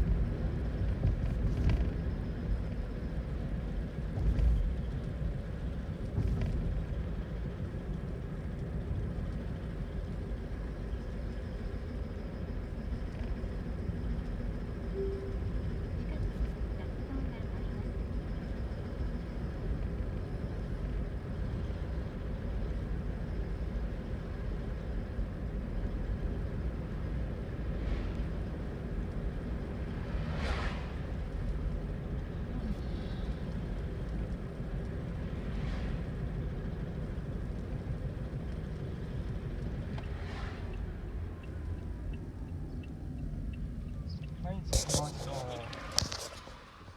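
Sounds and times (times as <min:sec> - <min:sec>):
road and cabin rumble: 0:00.0 - 0:46.9
brief whooshes: 0:30.3 - 0:31.0.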